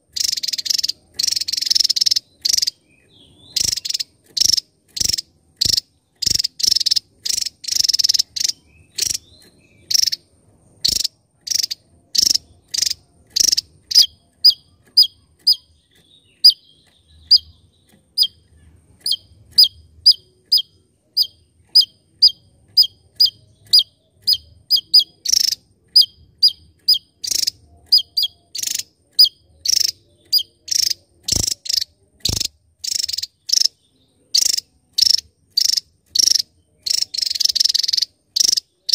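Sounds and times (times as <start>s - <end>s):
bird singing high-pitched notes: 0.0s - 38.9s.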